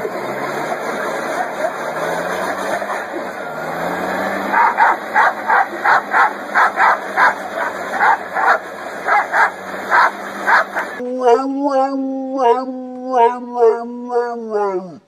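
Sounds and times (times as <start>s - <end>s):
dog barking rapidly: 4.5s - 11.0s.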